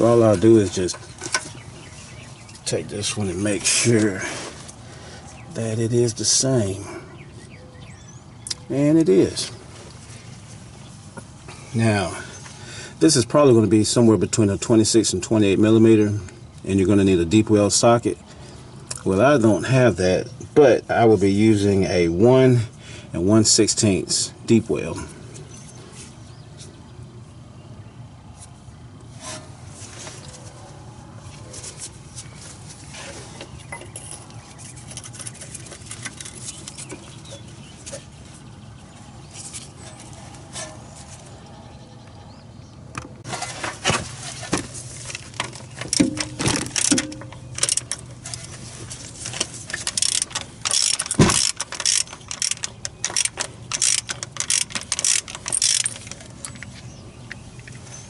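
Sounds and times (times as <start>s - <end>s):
ratchet clicks and clinks: 45.9s - 48.4s, 49.7s - 56.6s.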